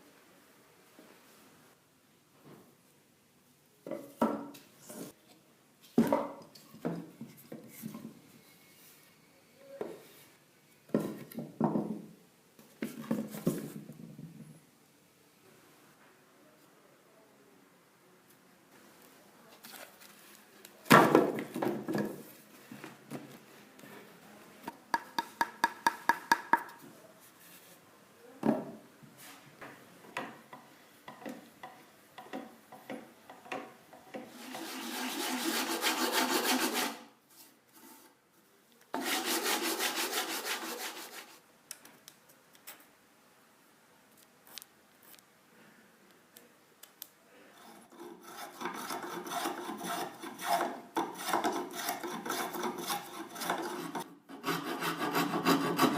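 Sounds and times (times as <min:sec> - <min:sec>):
rough rubbing across wood: 0:34.2 - 0:37.0, 0:39.0 - 0:41.4.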